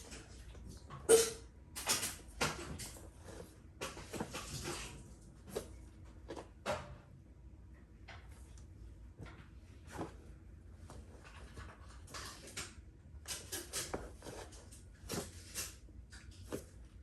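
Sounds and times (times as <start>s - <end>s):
clothing rustling: 9.0s - 12.6s, 13.6s - 17.0s.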